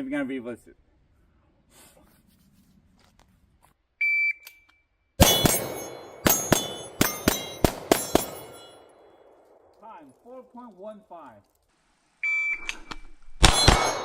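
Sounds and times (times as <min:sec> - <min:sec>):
shot timer beep: 0:04.0 - 0:04.7
steel targets ringing: 0:05.2 - 0:09.7, 0:13.4 - 0:14.0
handgun firing: 0:05.2 - 0:09.8, 0:13.4 - 0:14.0.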